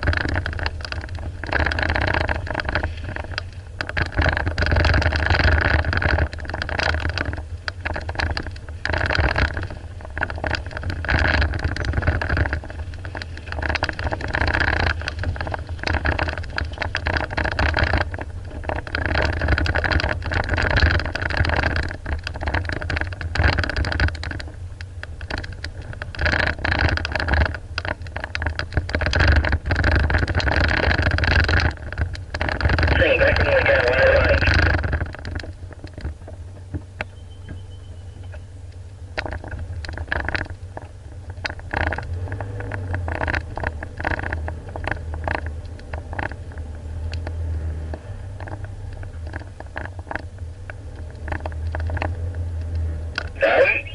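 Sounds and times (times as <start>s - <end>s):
vehicle knocks and rattles: 0.0s - 53.8s
off-road vehicle engine rumble: 0.0s - 53.9s.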